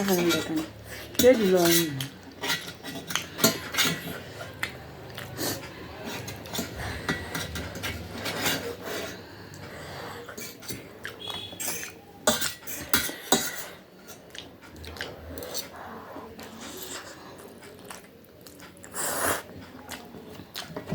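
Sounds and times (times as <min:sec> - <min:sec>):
utensils clinking on a dish: 0:00.0 - 0:09.3, 0:10.2 - 0:14.8.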